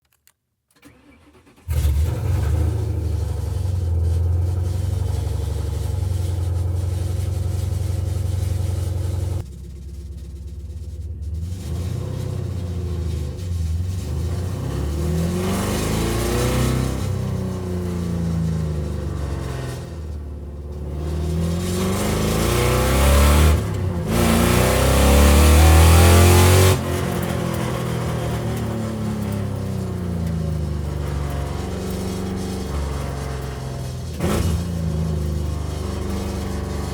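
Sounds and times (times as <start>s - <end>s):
car engine starting and idling: 0.7s - 36.9s.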